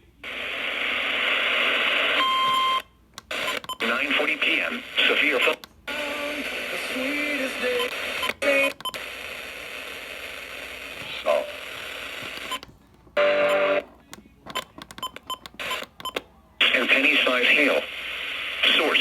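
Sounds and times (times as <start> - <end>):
person speaking over radio: 3.8 - 7.6, 11.0 - 11.6, 16.6 - 18.0, 18.6 - 19.0
static hiss: 16.6 - 19.0.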